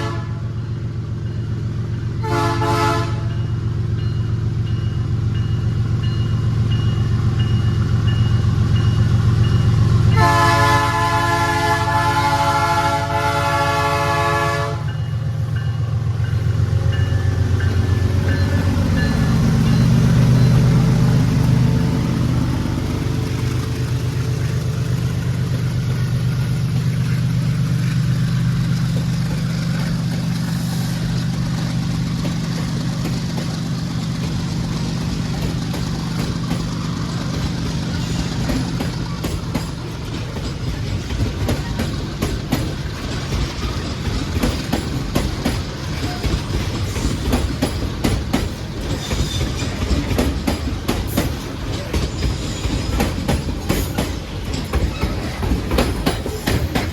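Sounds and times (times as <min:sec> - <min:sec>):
train horn blast: 0:00.0 - 0:00.6, 0:02.2 - 0:03.4, 0:10.1 - 0:15.0
locomotive engine running hard: 0:00.0 - 0:56.9.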